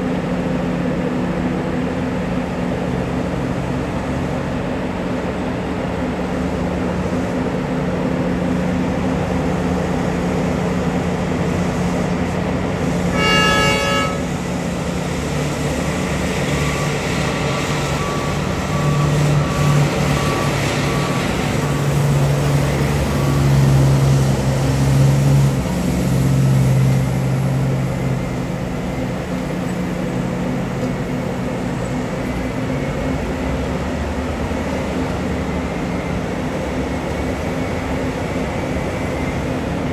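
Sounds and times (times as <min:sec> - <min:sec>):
heavy diesel engines running: 0:00.0 - 0:39.9
horn blast: 0:12.8 - 0:14.9
reversing beeps: 0:16.3 - 0:24.1.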